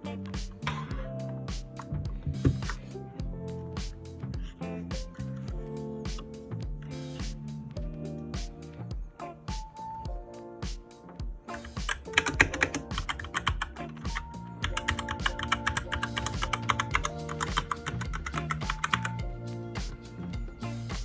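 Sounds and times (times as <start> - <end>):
background music: 0.0 - 21.0
mechanical keyboard typing: 11.5 - 19.2.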